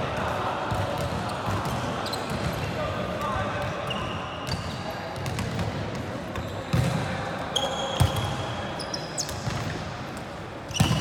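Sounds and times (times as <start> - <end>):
sneakers squeaking on court floor: 0.7 - 2.7, 3.6 - 9.9, 10.7 - 11.0.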